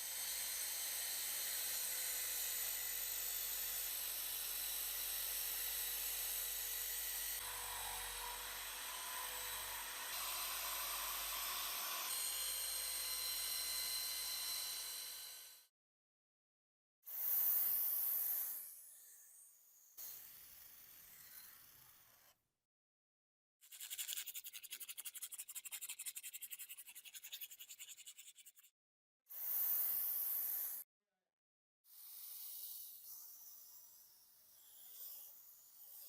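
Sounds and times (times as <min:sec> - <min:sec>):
brush scrubbing metal: 0:23.7 - 0:28.6.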